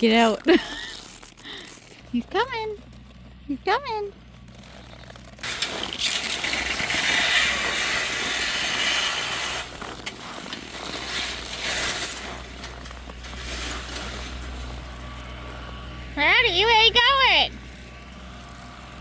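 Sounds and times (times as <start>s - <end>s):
snowblower throwing snow: 5.4s - 15.6s
low engine hum: 12.2s - 19.0s.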